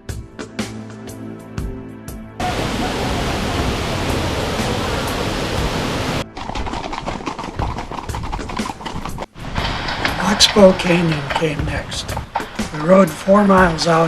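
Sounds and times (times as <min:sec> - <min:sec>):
waterfall rushing: 0:02.4 - 0:06.2.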